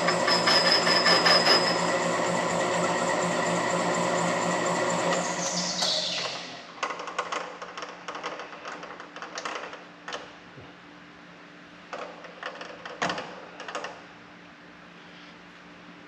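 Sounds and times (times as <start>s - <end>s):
low machine hum: 0.0s - 6.8s.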